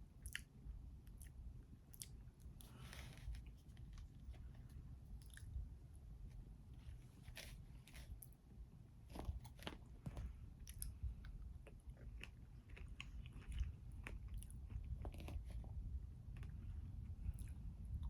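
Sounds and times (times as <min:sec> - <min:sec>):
chewing and biting: 0:09.0 - 0:16.6.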